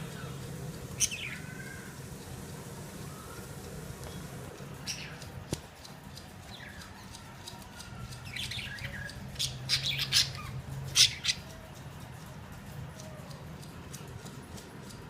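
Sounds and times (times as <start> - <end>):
budgerigars chattering and squawking: 0.2 - 1.9, 8.3 - 11.5.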